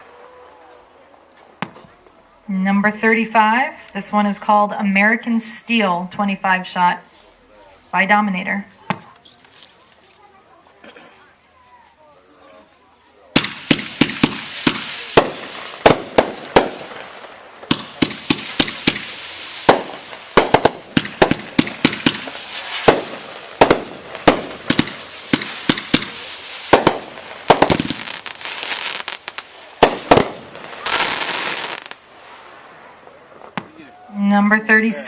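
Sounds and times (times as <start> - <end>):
firework reports: 0.0 - 10.5, 12.7 - 35.0
firework crackling: 8.6 - 10.8, 13.1 - 35.0.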